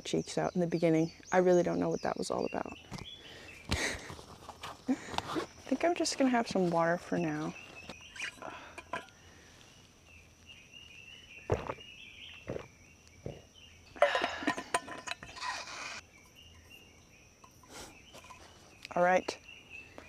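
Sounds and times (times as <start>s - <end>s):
rustling and handling noise: 3.6s - 10.4s, 17.4s - 19.0s
bird chirps: 5.2s - 20.0s.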